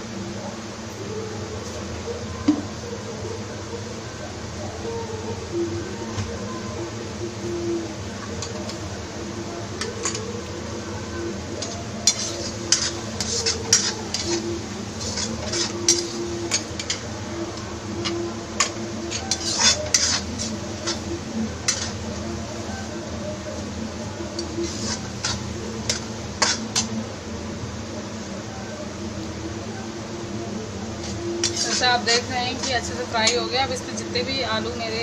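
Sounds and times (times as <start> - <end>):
metal spoon scraping a pan: 9.8 - 10.3, 11.6 - 17.1, 17.9 - 22.8, 24.3 - 26.9, 31.0 - 33.5.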